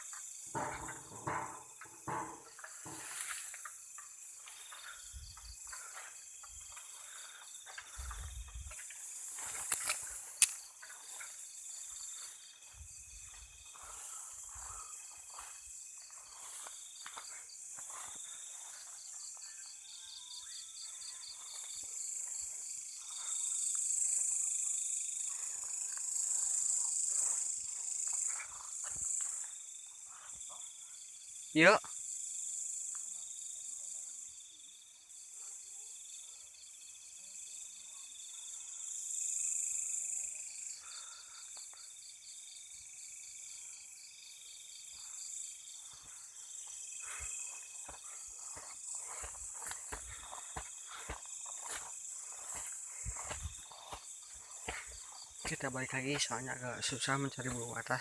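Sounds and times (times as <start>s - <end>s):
crickets chirping: 0.0s - 58.0s
rustling through undergrowth: 2.5s - 19.3s, 45.8s - 56.4s.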